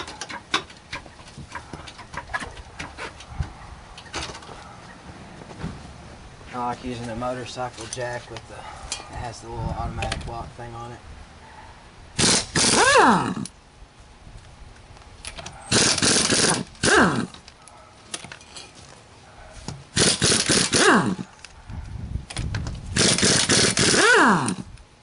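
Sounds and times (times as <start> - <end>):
power tool motor whining: 12.2 - 13.5, 15.7 - 17.4, 20.0 - 21.3, 23.0 - 24.7.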